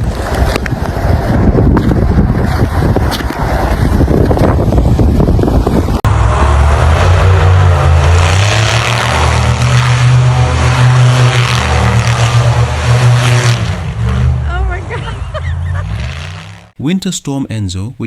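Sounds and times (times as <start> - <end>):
wind noise on microphone: 0.0 - 14.0
vehicle engine running: 0.0 - 16.8.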